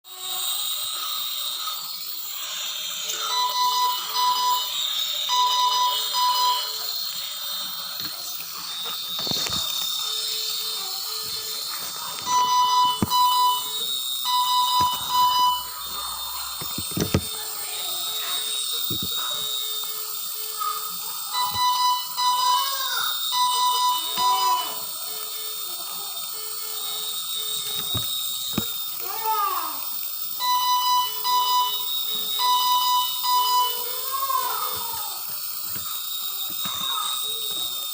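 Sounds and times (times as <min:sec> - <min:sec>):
short electronic beeps: 0:03.2 - 0:07.0, 0:12.2 - 0:17.4, 0:21.4 - 0:24.9, 0:30.4 - 0:33.9.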